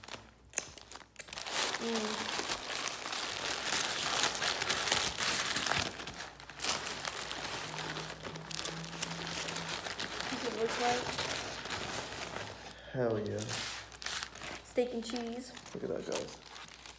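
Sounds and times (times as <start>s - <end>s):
paper wrapper crinkling: 0.0s - 16.9s.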